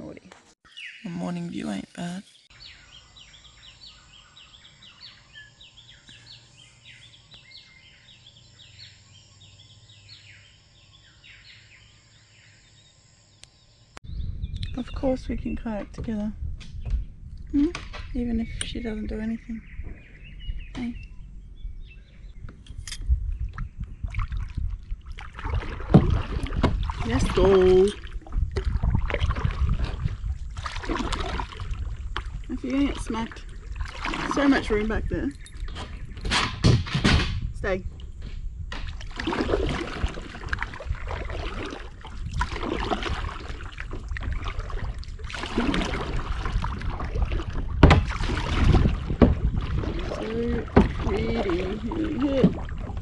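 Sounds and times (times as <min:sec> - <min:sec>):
low rumble: 0:14.1 - 0:36.2
paddle splashing water: 0:24.0 - 0:35.0, 0:38.8 - 0:53.0
paddle knocks: 0:25.4 - 0:32.4, 0:35.6 - 0:37.6, 0:42.4 - 0:53.0
sharp knocks: 0:35.7 - 0:37.5, 0:47.8 - 0:48.3, 0:49.1 - 0:49.6.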